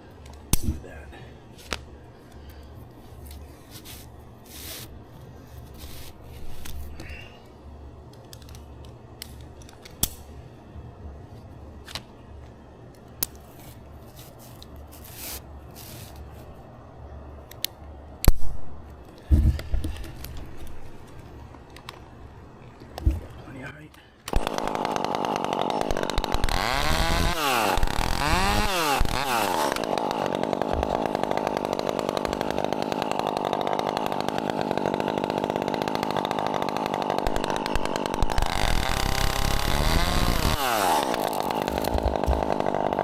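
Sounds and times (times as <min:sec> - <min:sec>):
thumps: 0:40.5 - 0:42.8.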